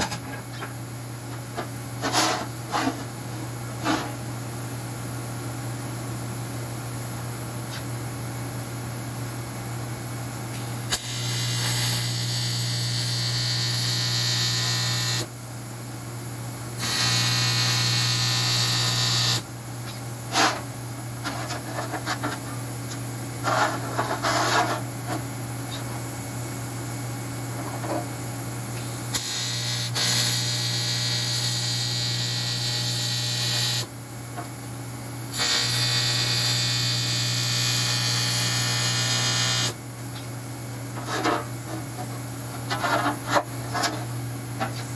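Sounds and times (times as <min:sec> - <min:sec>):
welding arc buzzing: 0:10.9 - 0:15.3, 0:16.8 - 0:20.6, 0:29.0 - 0:33.9, 0:35.3 - 0:39.8.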